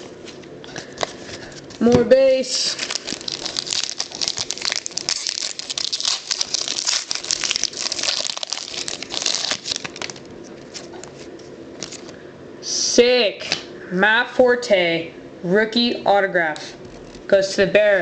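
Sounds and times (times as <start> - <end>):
wrapper crinkling and tearing: 2.6 - 12.2.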